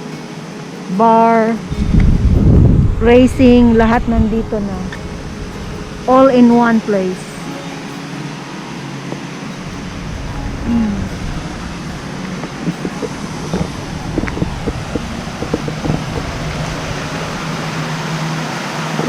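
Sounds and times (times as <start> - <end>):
low rumble: 1.6 - 7.6, 9.6 - 18.5.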